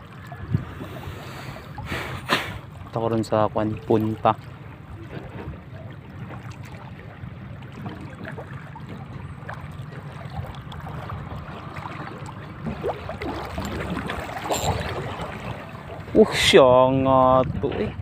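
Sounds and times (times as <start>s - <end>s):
sea water washing: 0.0s - 16.8s
wind on microphone: 12.7s - 18.0s.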